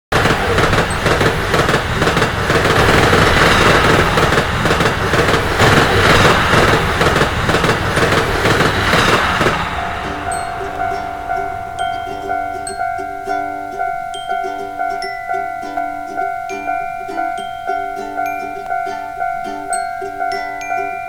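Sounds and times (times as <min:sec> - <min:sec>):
train passing rumble: 0:00.1 - 0:21.0
mallet chimes: 0:09.0 - 0:21.0.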